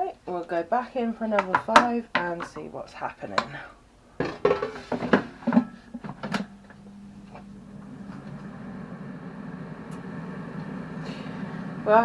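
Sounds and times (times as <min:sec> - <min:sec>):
air fryer basket clunks: 0:04.2 - 0:06.6
air fryer fan humming: 0:04.4 - 0:12.0.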